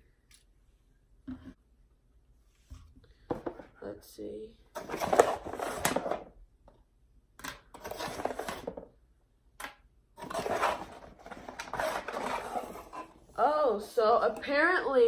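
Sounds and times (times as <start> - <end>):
plastic packaging rustling: 10.2 - 13.3.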